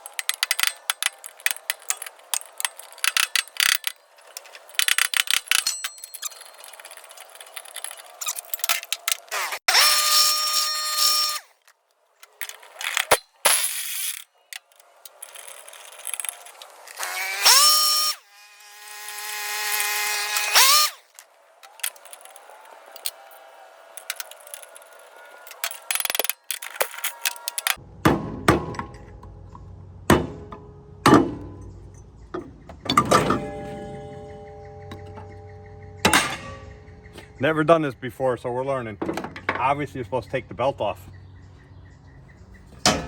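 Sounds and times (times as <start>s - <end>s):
tool clatter and clicks: 0.0s - 27.8s, 30.5s - 37.4s, 39.0s - 39.9s
cordless drill whining: 6.3s - 11.6s, 15.2s - 27.8s.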